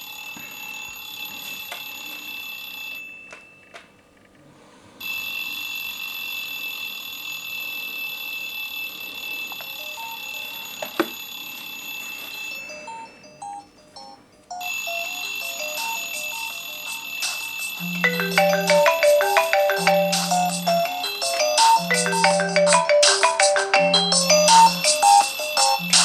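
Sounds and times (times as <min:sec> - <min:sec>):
phone alarm tone: 0:09.1 - 0:13.6, 0:14.6 - 0:26.0
marimba ringtone melody: 0:17.8 - 0:26.0.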